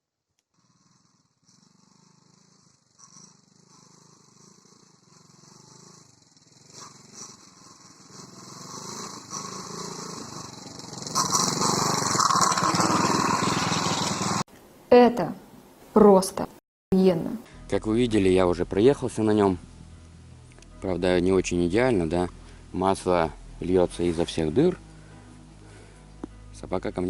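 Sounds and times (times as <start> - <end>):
moped engine running: 0.6 - 14.4.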